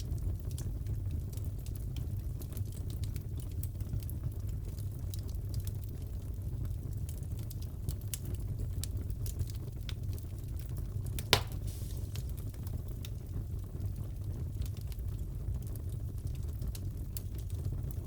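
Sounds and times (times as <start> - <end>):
wood fire crackling: 0.0 - 18.0
loud fire pop: 11.2 - 12.6.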